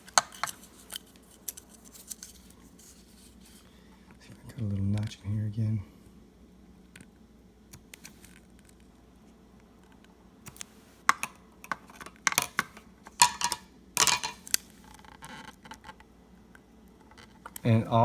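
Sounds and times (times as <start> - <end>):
small hard objects clicking and rattling: 11.1 - 16.0.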